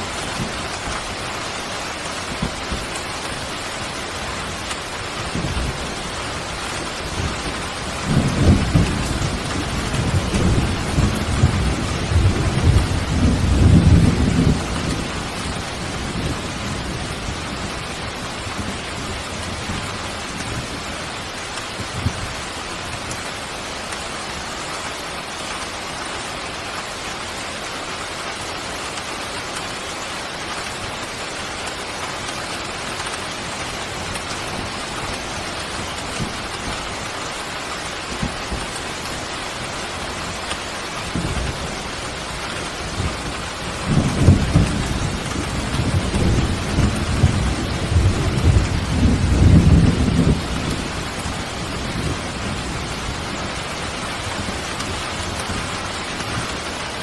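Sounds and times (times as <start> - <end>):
steady rain: 0.0 - 57.0
thunder rumbling: 4.4 - 20.9, 40.4 - 57.0.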